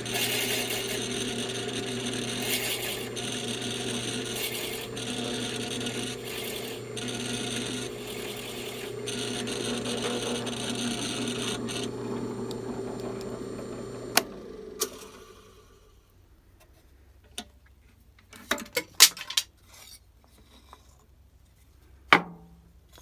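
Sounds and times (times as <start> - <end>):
cutter grinding into wood: 0.0 - 15.8
drill motor running: 0.0 - 15.8.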